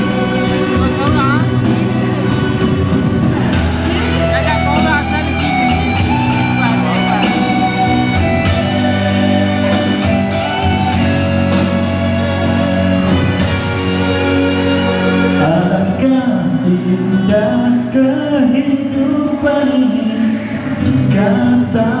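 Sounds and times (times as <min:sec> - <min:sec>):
pop song music: 0:00.0 - 0:22.0
person singing: 0:15.2 - 0:22.0.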